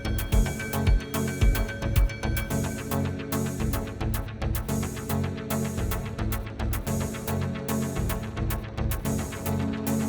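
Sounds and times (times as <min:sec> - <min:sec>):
electronic pop music: 0:00.0 - 0:03.0.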